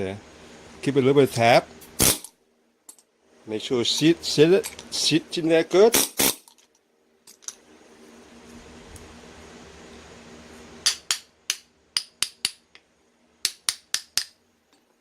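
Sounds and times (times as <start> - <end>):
steady low hum: 0.0 - 15.0
hammer tapping on metal joint: 10.9 - 14.4.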